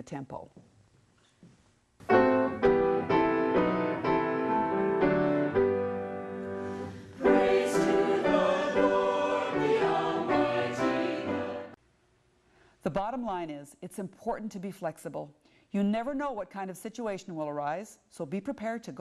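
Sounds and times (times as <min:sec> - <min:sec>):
piano accompaniment: 0:02.0 - 0:11.8
group singing a hymn: 0:06.6 - 0:11.8.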